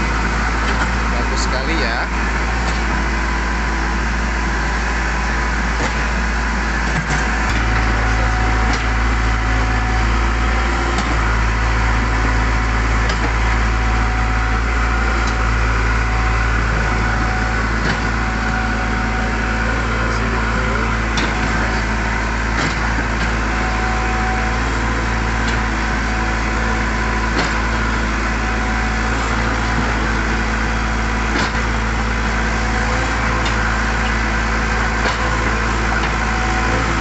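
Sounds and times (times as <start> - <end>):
backhoe diesel engine running: 0.0 - 37.0.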